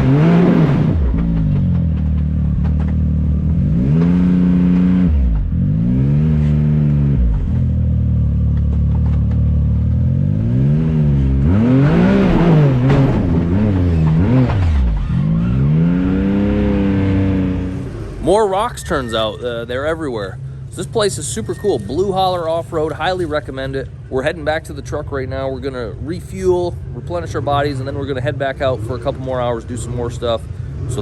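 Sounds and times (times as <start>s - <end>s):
engine revving up and down: 0.0s - 20.2s.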